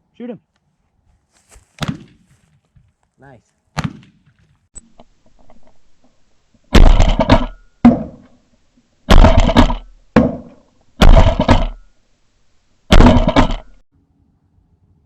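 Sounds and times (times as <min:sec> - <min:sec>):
shotgun blasts: 0:01.8 - 0:02.2, 0:03.8 - 0:04.4, 0:06.7 - 0:08.2, 0:09.1 - 0:11.8, 0:12.9 - 0:13.7.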